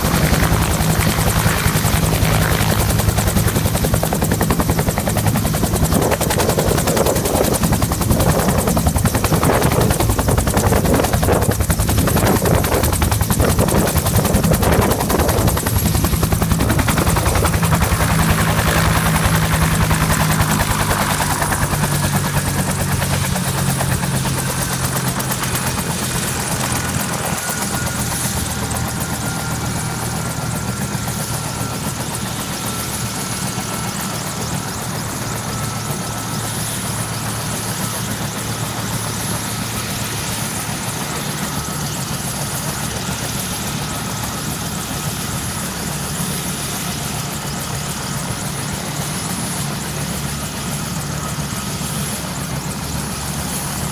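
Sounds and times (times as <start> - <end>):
helicopter engine drone: 0.0 - 53.9
helicopter rotor chopping: 0.0 - 53.9.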